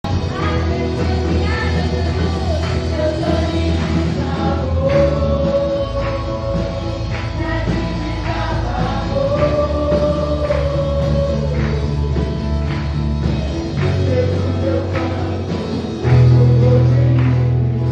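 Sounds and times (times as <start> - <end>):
bass line: 0.0 - 17.9
gospel band with singing: 0.0 - 17.9.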